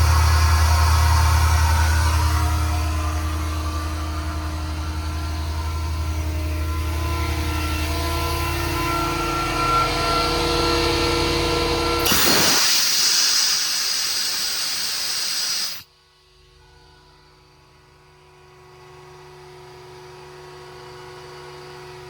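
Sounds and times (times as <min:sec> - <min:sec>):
air compressor humming: 0:12.0 - 0:15.8
compressed air hissing: 0:12.0 - 0:15.8.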